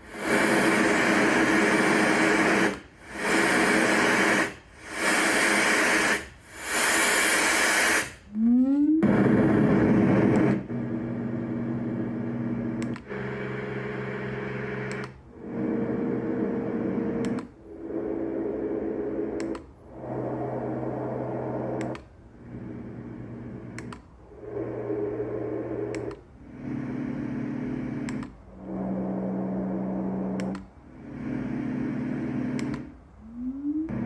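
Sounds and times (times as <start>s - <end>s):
noise machine fan-like hum: 9.0s - 34.0s
faint click: 28.1s - 28.4s.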